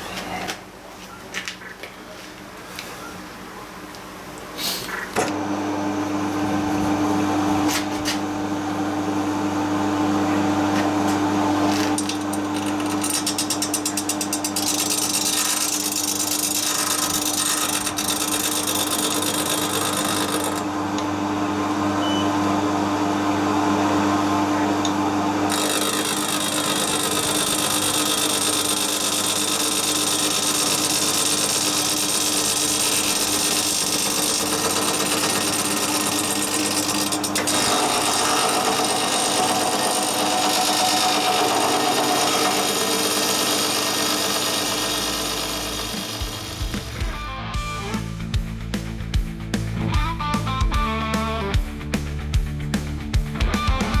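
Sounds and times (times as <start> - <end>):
power tool grinding metal: 11.6 - 20.8, 25.4 - 47.2.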